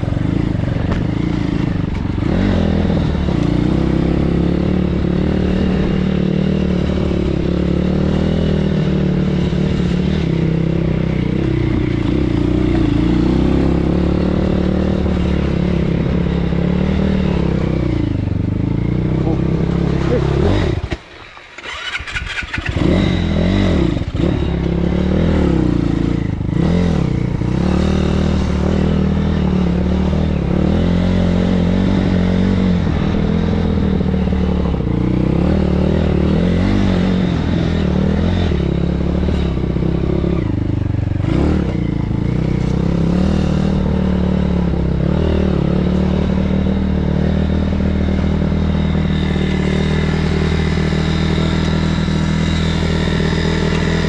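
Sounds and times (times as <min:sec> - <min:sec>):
motorbike engine running: 0:00.0 - 0:54.0.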